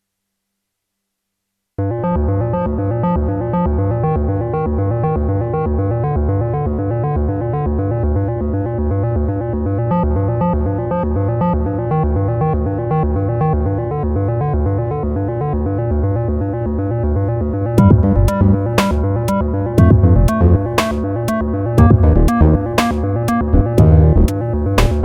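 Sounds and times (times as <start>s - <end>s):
pulsing synth bass line: 1.8s - 25.0s
synthesizer repeated notes: 17.7s - 25.0s.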